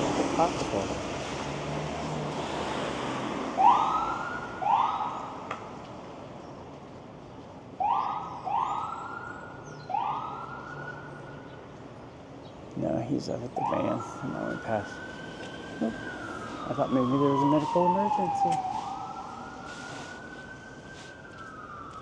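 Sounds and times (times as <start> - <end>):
ambulance siren whooping: 3.5 - 5.4, 7.8 - 11.2, 13.6 - 22.0.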